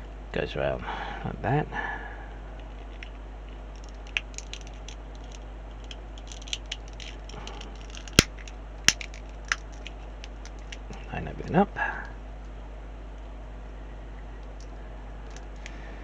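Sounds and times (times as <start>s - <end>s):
steady low hum: 0.0s - 16.0s
plastic parts clicking: 2.6s - 11.0s.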